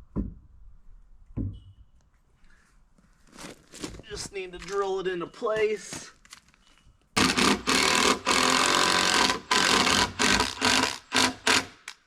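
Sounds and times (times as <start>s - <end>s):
power drill driving screws: 7.2s - 12.0s.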